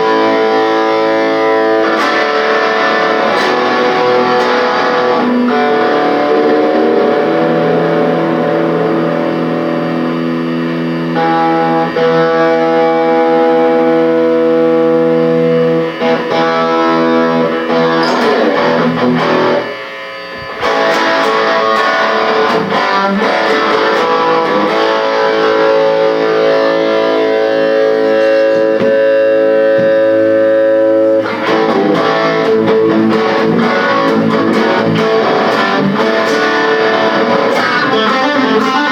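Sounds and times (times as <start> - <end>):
guitar chords and notes ringing: 0.0 - 38.9.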